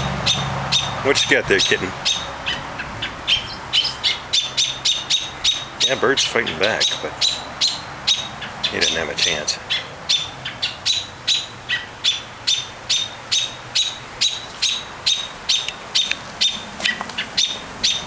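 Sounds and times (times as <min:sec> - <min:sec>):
small bird alarm calls: 0:00.0 - 0:18.0.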